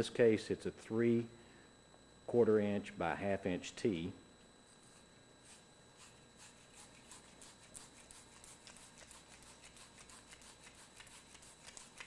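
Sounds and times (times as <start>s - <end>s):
brush scratching inside metal pipe: 4.7s - 12.0s.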